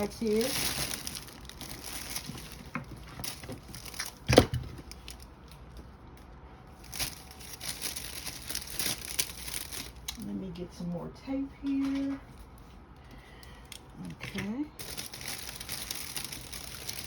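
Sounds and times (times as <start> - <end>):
gift wrap crinkling: 0.0 - 10.3, 14.3 - 17.0.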